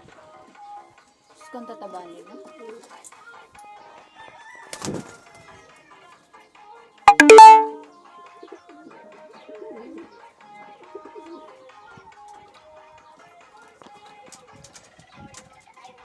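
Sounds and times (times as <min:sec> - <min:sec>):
faint background music: 0:01.1 - 0:05.1, 0:08.4 - 0:16.0
pigeon cooing: 0:09.5 - 0:10.1, 0:10.8 - 0:11.5.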